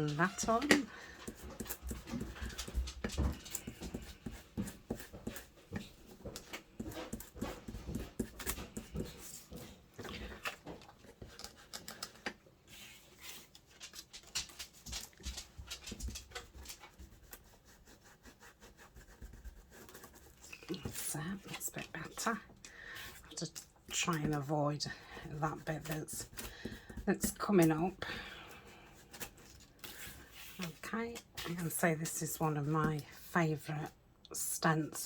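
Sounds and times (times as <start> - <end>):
ink tool dabbing on paper: 3.4 - 9.4.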